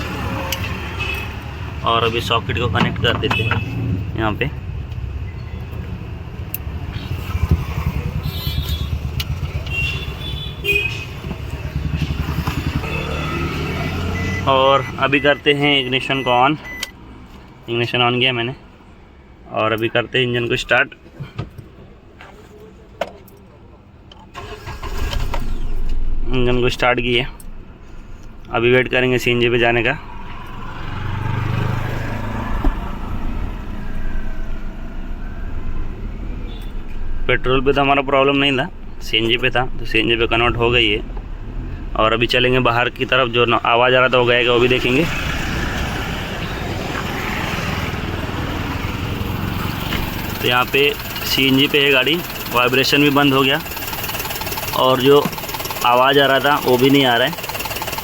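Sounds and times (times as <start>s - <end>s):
vehicle engine running: 5.8s - 15.3s, 44.2s - 58.0s.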